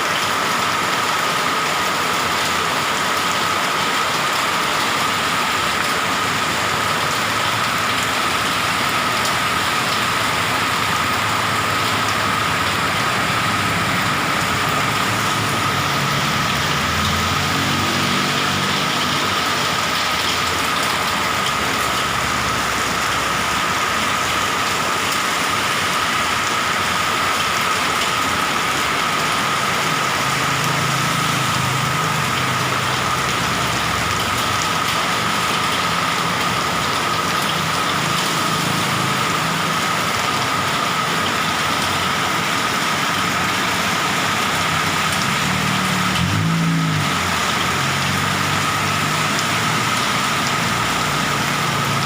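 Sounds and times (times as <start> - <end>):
heavy rain pouring: 0.0 - 52.0.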